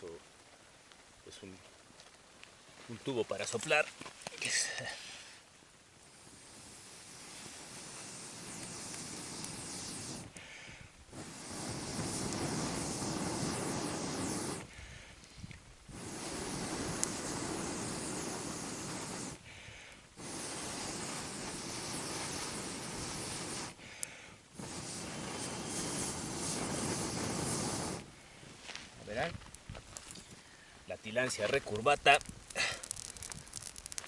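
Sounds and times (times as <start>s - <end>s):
air blown through a tube hissing: 6.1s - 28.3s.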